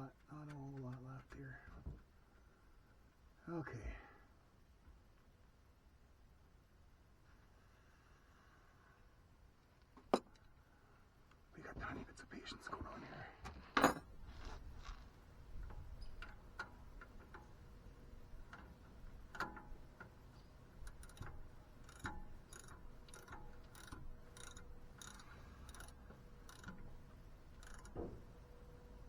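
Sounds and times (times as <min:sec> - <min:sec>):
hand tools clicking on metal: 0:15.7 - 0:28.5.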